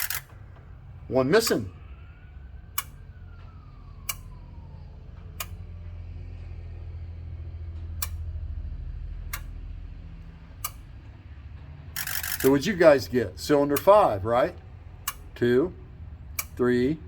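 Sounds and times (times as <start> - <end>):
fuel injector solenoids clicking: 10.6 - 10.9, 15.0 - 15.4, 16.3 - 16.6.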